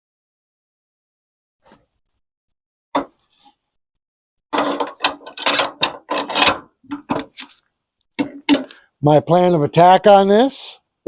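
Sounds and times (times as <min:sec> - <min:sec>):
metal mechanism clanking and ratcheting: 0:04.6 - 0:07.6.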